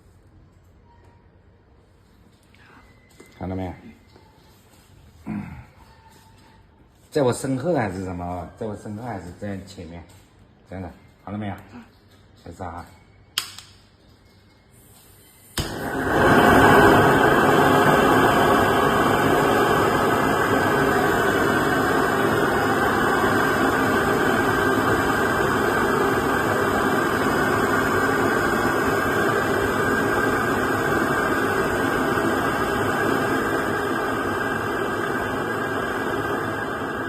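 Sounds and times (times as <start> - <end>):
jet torch lighter hissing: 14.8 - 37.0.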